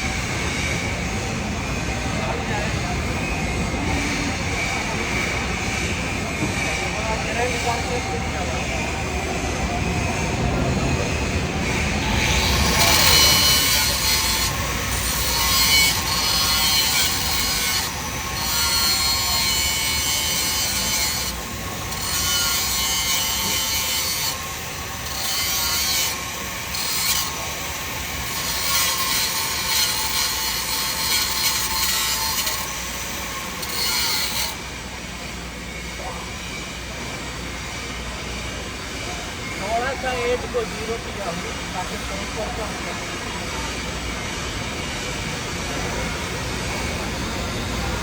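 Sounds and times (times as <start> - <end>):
grinder rasping on steel: 11.0 - 34.7.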